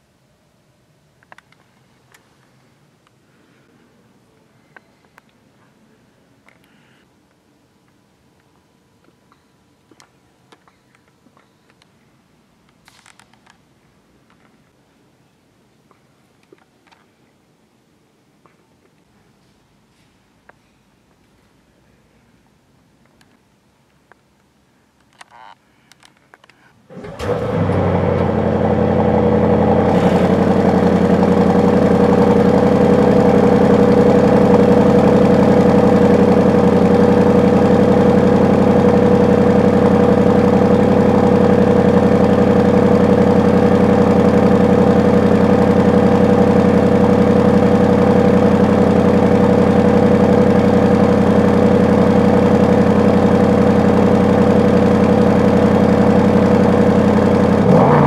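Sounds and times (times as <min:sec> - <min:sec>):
car engine starting and idling: 0:26.9 - 0:58.0.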